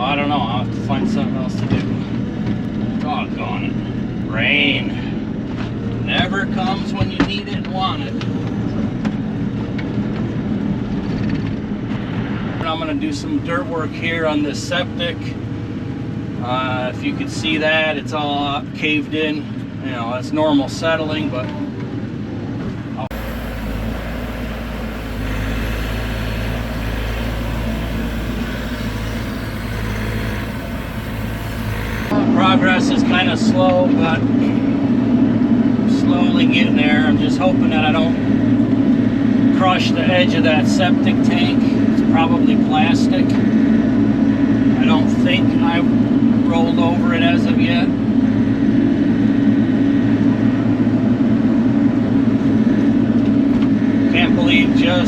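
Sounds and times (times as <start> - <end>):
excavator diesel engine running: 23.1 - 32.2.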